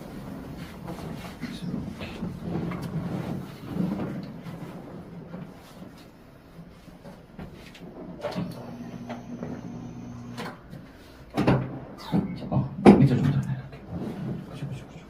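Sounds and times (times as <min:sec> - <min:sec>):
mechanical hum: 0:00.0 - 0:15.0.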